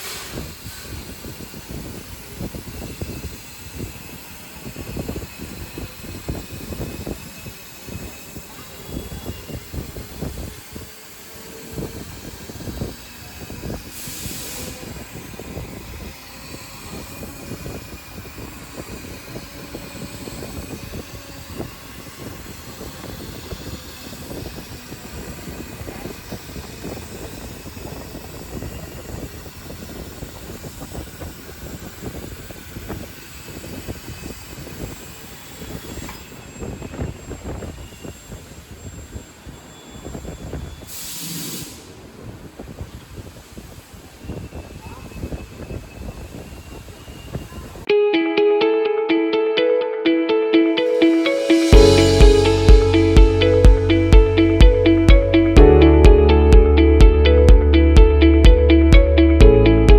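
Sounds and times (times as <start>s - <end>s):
brief hiss: 0.0s - 1.1s, 13.9s - 14.9s, 40.9s - 42.1s
laser cutting machine noise: 1.1s - 36.6s.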